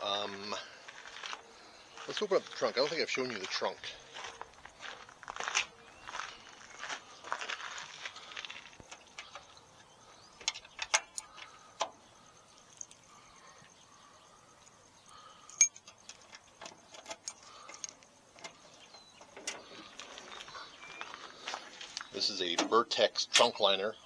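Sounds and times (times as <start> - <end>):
key clicking in lock: 10.4 - 11.9, 15.5 - 18.6
key ring jangling: 10.5 - 11.5, 15.0 - 19.0.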